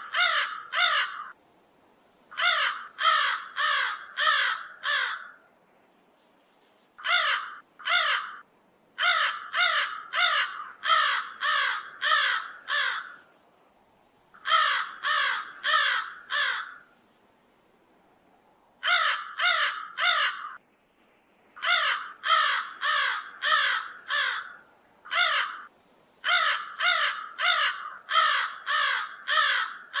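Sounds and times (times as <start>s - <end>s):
crow cawing: 0.0s - 1.4s, 2.3s - 5.4s, 7.0s - 8.4s, 9.0s - 13.2s, 14.4s - 16.9s, 18.8s - 20.6s, 21.6s - 30.0s.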